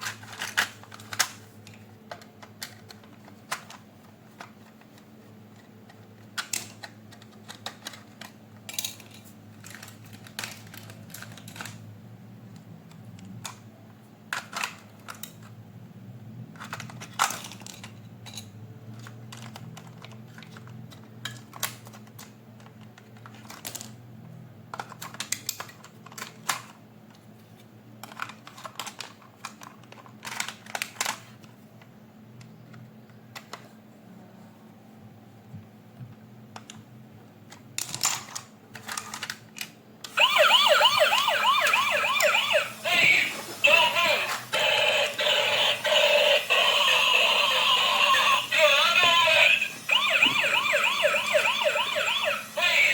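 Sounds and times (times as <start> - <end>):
plastic toy parts rattling: 0.0 - 11.9, 12.5 - 15.6, 16.5 - 24.0, 24.7 - 31.9, 37.4 - 40.2.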